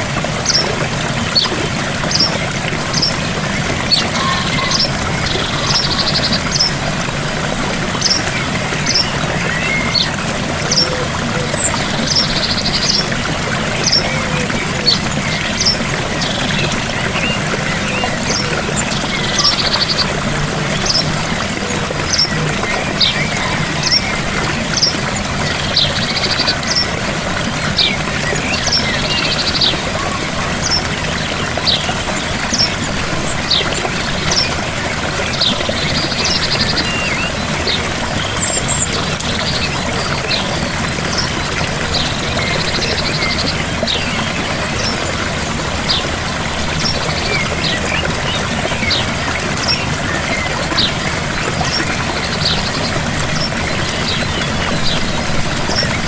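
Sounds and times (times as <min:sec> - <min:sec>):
waterfall rushing: 0:00.0 - 0:56.0
bird chirping: 0:01.3 - 0:06.8
buzzy bird trills: 0:03.8 - 0:06.8.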